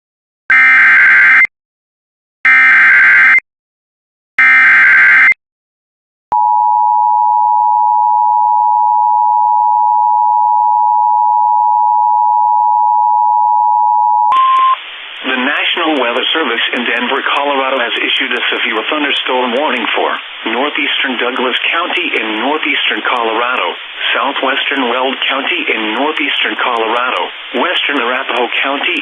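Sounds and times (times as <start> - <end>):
two-tone attention signal: 6.4 - 14.8.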